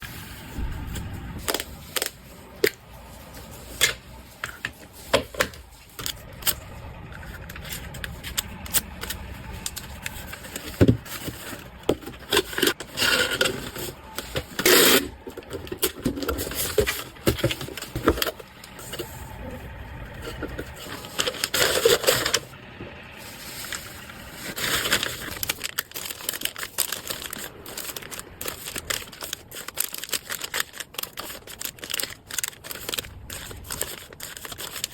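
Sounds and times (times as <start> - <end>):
packaging rustling and crinkling: 0.3 - 22.6, 23.2 - 34.9.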